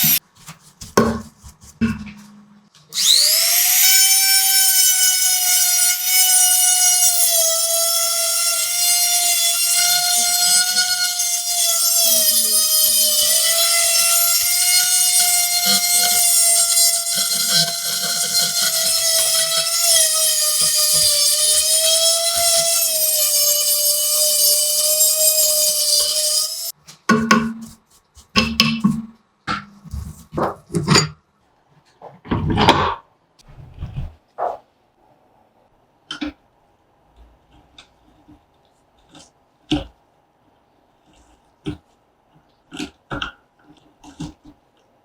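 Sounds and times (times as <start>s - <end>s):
electric power tool whining: 3.0s - 6.8s.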